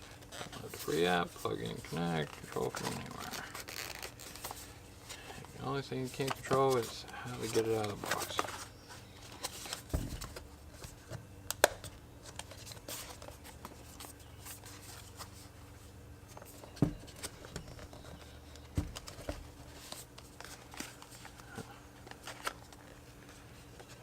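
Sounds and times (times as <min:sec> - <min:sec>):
packaging clicks and rustles: 0:06.1 - 0:10.4.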